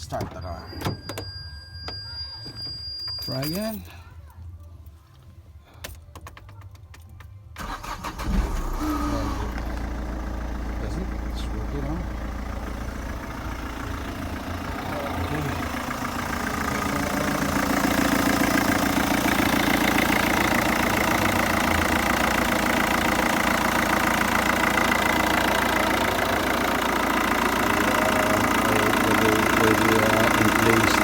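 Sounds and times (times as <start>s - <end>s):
diesel engine idling: 7.6s - 31.0s.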